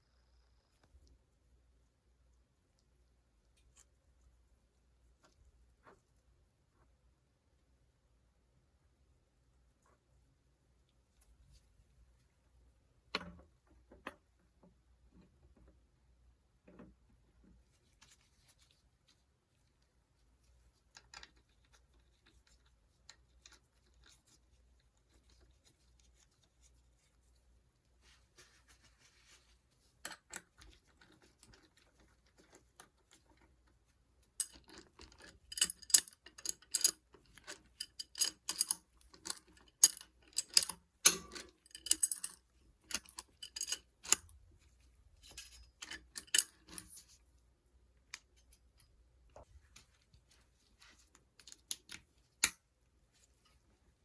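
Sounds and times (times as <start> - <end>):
metal tools clinking and clicking: 34.4 - 44.3, 45.2 - 47.2.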